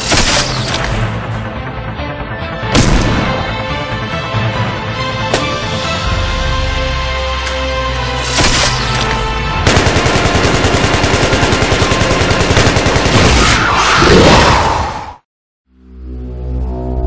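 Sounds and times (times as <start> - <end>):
music: 0.0 - 13.4, 15.7 - 17.0
automatic gunfire: 9.6 - 13.3.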